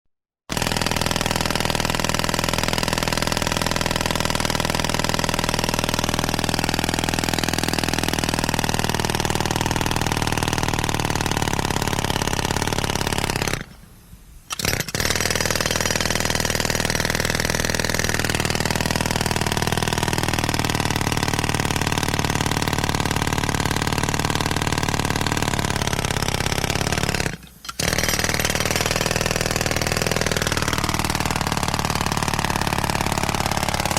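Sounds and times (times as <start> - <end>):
pneumatic air hammer hammering: 14.5 - 33.9.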